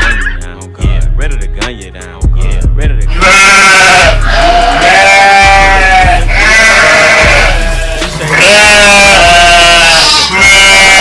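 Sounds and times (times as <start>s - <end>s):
hip-hop beat: 0.0s - 11.0s
sheep bleating: 3.1s - 11.0s.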